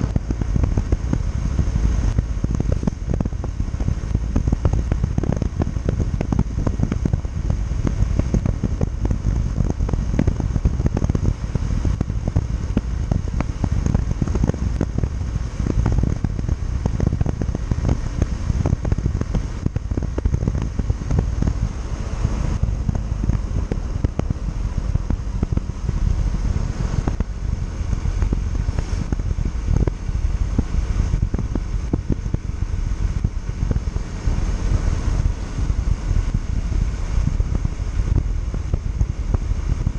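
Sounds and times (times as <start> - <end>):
motorcycle engine and road noise: 0.0 - 39.9
wind buffeting microphone: 0.0 - 39.9.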